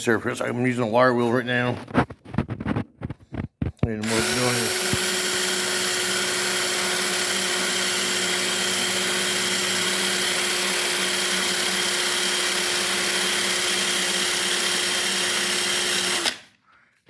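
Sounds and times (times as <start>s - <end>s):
wire wheel grinding metal: 4.0s - 12.8s.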